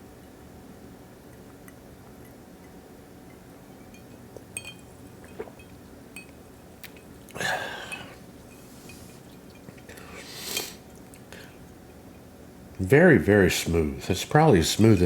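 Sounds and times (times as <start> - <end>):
ice cube clinking in glass: 3.8 - 6.4.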